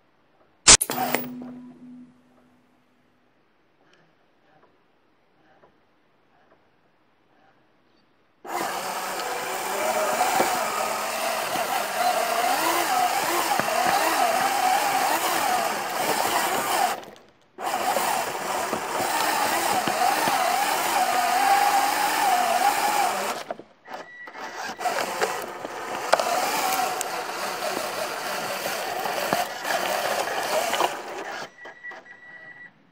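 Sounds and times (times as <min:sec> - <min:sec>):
toy car electric motor whining: 0:08.5 - 0:32.6.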